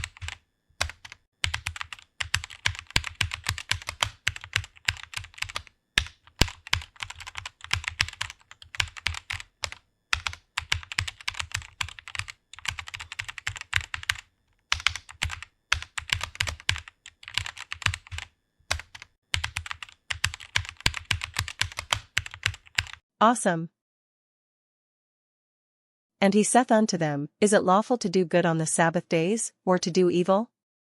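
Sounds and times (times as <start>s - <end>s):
typing on computer keyboard: 0.0s - 23.0s.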